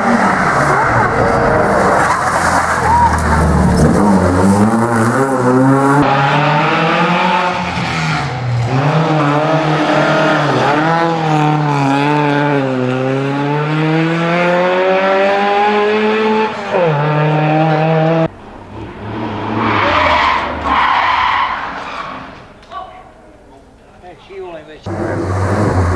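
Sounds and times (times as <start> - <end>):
racing car engine at high revs: 0.0 - 22.4, 24.9 - 25.9.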